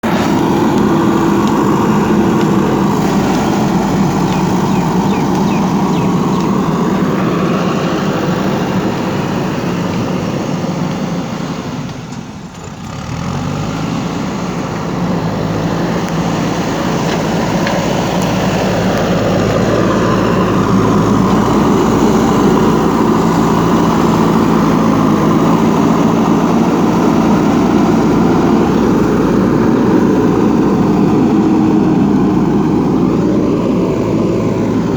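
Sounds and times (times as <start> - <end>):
backhoe diesel engine running: 0.0 - 34.9.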